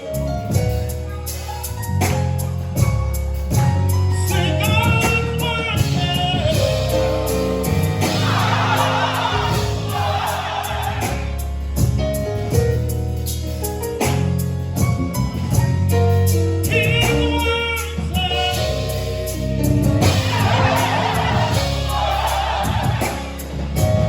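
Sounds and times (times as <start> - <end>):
band with steady bass: 0.0 - 24.0
choir singing gospel: 4.2 - 12.5, 16.9 - 24.0.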